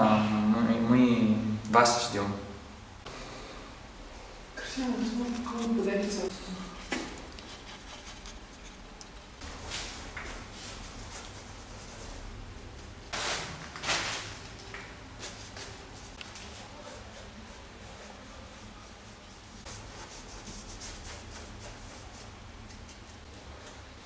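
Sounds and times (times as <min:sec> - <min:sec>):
paintbrush scraping on canvas: 0:05.0 - 0:08.9, 0:15.2 - 0:22.4.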